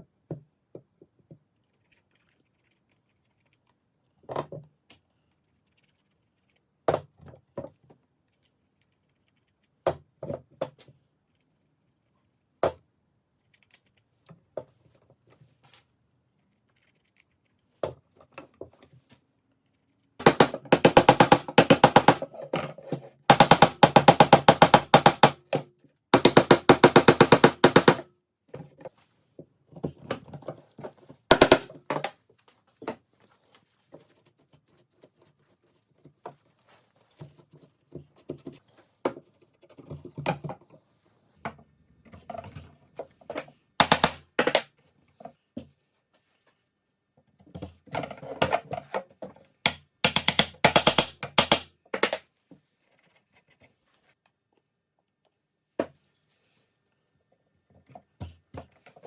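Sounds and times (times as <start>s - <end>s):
wooden knocks: 20.2s - 22.2s, 26.2s - 28.0s, 31.3s - 32.1s, 43.8s - 44.6s.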